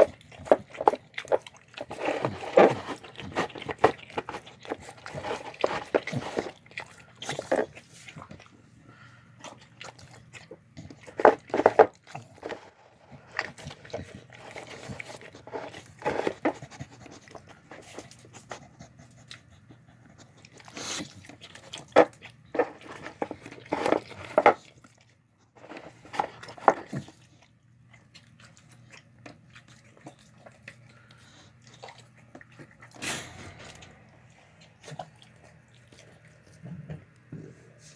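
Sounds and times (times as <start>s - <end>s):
dog chewing and crunching: 0.0s - 37.9s.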